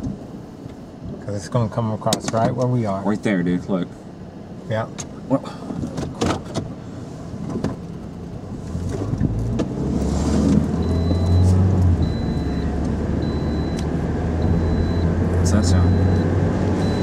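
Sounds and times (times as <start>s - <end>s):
car engine and road rumble: 0.0s - 17.0s
short high-pitched beeps: 10.8s - 17.0s.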